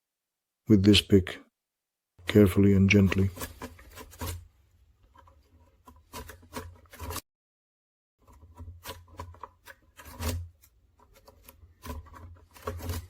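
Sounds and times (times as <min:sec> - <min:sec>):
lock pick scraping and clicking: 0:03.1 - 0:04.5, 0:05.1 - 0:07.2, 0:08.2 - 0:13.0.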